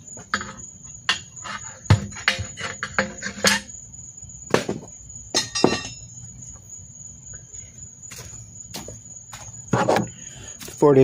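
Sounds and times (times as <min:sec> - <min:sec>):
crickets chirping: 0:00.0 - 0:11.0
sharp knocks and clinks: 0:00.2 - 0:03.8, 0:05.3 - 0:06.1.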